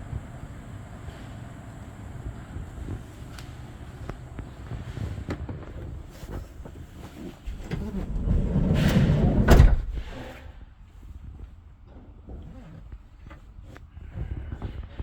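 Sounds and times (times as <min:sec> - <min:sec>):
van sliding door rolling and slamming: 0:00.0 - 0:10.4
low rumbling: 0:00.0 - 0:10.5.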